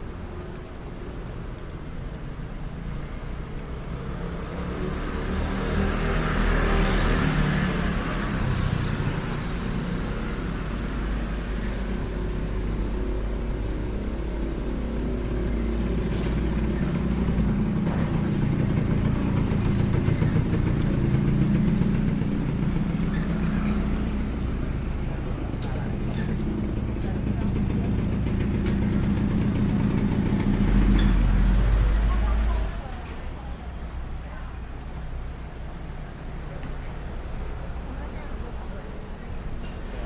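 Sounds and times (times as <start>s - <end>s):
cars and scooters passing: 0.0s - 40.0s
loud vehicle passing: 3.9s - 33.4s.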